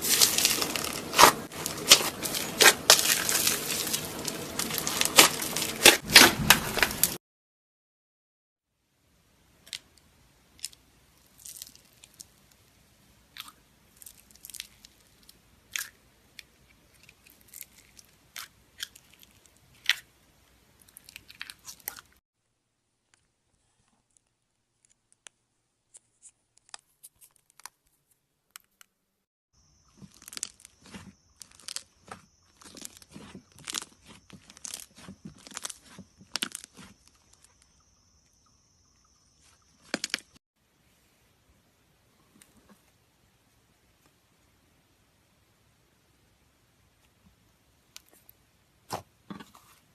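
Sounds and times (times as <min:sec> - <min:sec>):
slime clicking and crackling: 0:00.0 - 0:06.2, 0:30.0 - 0:37.3.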